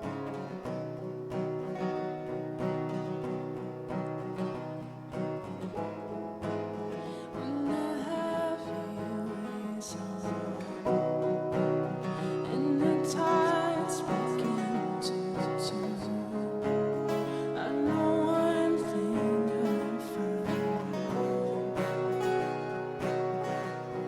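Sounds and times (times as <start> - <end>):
strummed acoustic guitar: 0.0 - 24.0
person singing with vibrato: 7.0 - 24.0.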